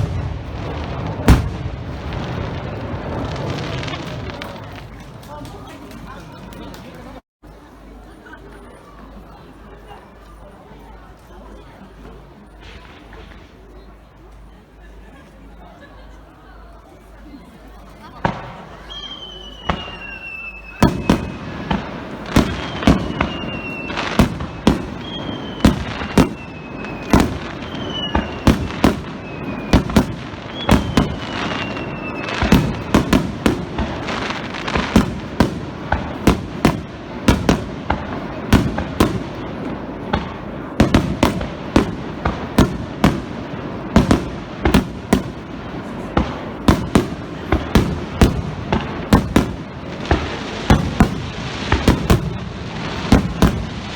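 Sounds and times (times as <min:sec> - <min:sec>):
fireworks bursting: 0:00.0 - 0:07.2, 0:11.8 - 0:14.6, 0:17.1 - 0:53.9
falling firework whistles: 0:18.6 - 0:39.5, 0:40.1 - 0:53.9
continuous rumble: 0:20.8 - 0:53.9.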